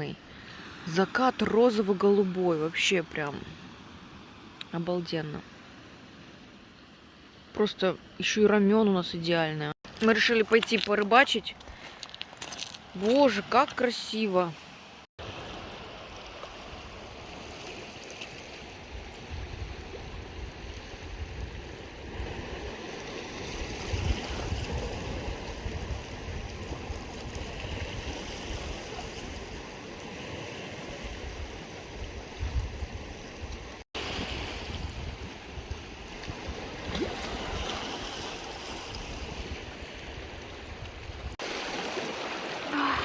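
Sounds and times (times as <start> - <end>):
small waves washing on shore: 0.0 - 8.2, 9.8 - 43.0
wind gusting on microphone: 18.8 - 29.8, 30.7 - 38.0.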